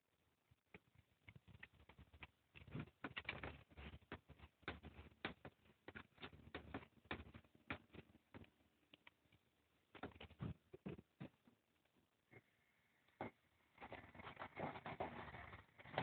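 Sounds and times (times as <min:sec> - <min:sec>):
tools clicking and knocking: 0:00.8 - 0:11.4.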